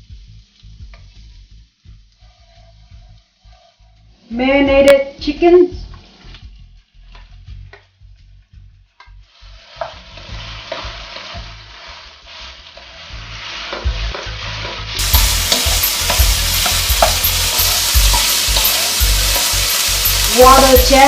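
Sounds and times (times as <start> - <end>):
chicken sizzling in hot oil: 0.0 - 4.1, 9.1 - 21.0
utensil knocking against pan: 15.0 - 20.9.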